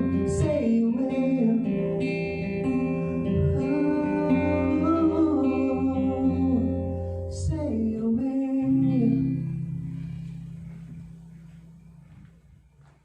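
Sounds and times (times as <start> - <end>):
person singing: 0.0 - 10.3
acoustic guitar: 0.0 - 13.0.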